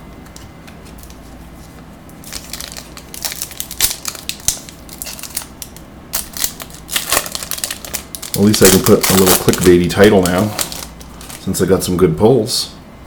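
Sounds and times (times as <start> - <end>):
wrapper crinkling and tearing: 2.2 - 11.5.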